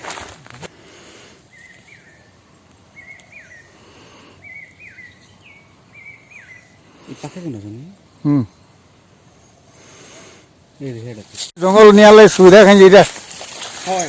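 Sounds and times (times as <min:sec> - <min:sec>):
footsteps crunching: 0:00.0 - 0:00.8, 0:11.2 - 0:14.0.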